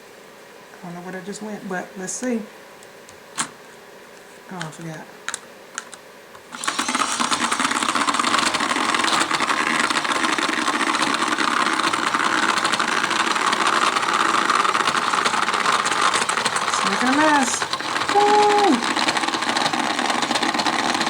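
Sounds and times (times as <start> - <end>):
small toy motor running: 6.5 - 21.0.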